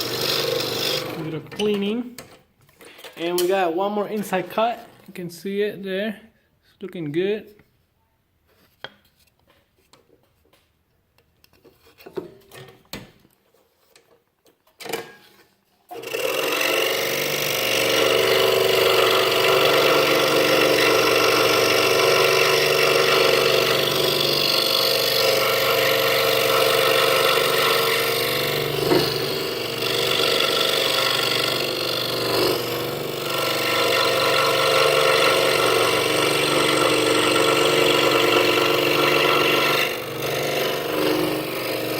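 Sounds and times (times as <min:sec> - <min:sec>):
scroll saw cutting wood: 0:00.0 - 0:02.0, 0:15.9 - 0:41.9.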